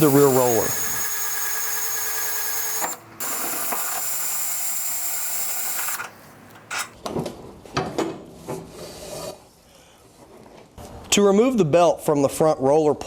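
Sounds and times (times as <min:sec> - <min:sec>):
power drill running: 0:00.0 - 0:06.9.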